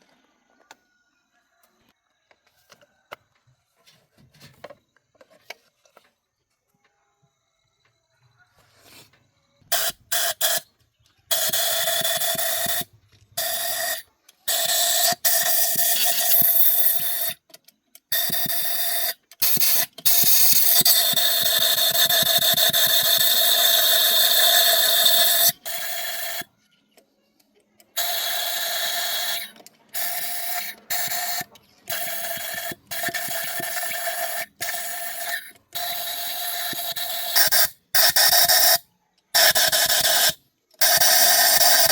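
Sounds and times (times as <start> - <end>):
hissing spray bursts: 9.7 - 10.6, 11.3 - 17.4, 18.1 - 26.5, 28.0 - 38.8, 39.4 - 41.9.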